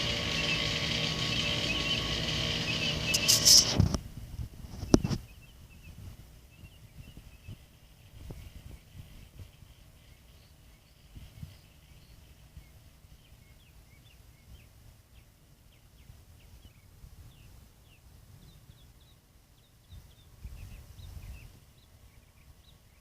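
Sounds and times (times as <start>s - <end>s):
small birds chirping: 0.0s - 3.9s, 4.7s - 23.0s
wind rumble on microphone: 3.1s - 13.6s, 19.8s - 23.0s.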